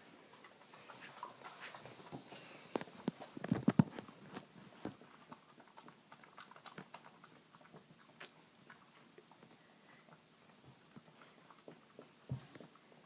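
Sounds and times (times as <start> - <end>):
dog licking and smacking: 0.3 - 13.0.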